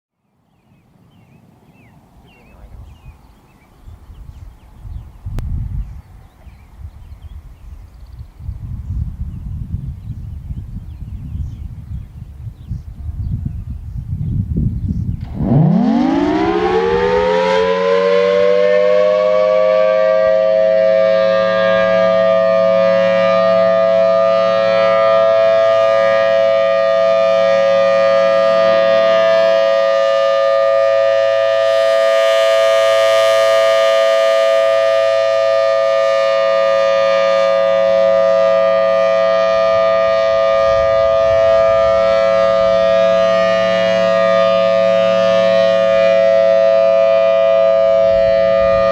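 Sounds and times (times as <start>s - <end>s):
warning siren winding up: 15.2s - 48.9s.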